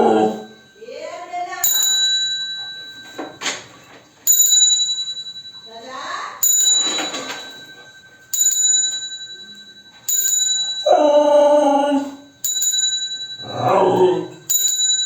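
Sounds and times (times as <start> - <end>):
dog howling: 0.0 - 0.7, 10.9 - 12.4, 13.4 - 14.5
bicycle bell ringing: 0.0 - 11.5, 12.1 - 15.0.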